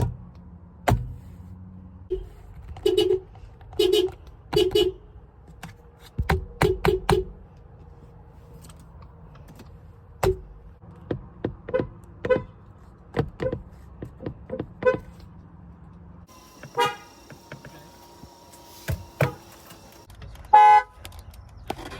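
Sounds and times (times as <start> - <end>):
car horn toots: 2.1 - 5.0, 16.3 - 18.1, 18.7 - 20.0.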